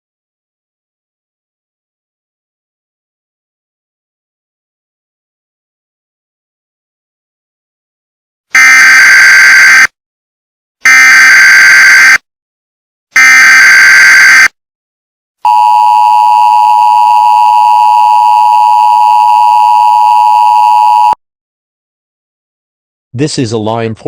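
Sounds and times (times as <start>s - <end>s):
two-tone attention signal: 15.5s - 21.2s.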